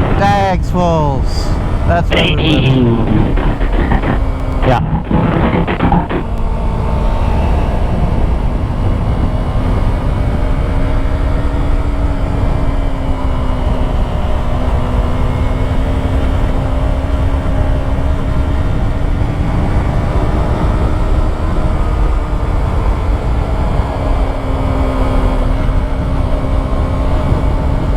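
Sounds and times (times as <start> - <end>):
wind rush on microphone: 2.8 - 27.9
motorcycle engine cruising: 2.9 - 27.9.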